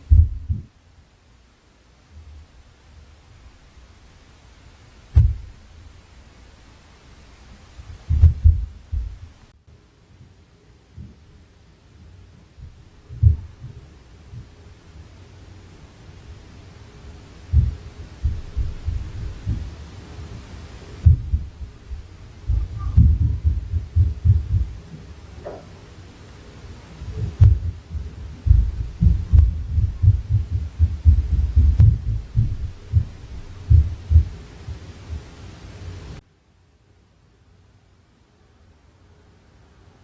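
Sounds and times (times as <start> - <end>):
footsteps thumping through ceiling: 0.0 - 0.7, 5.1 - 5.7, 7.8 - 9.4, 12.6 - 14.6, 17.4 - 25.8, 27.0 - 35.3.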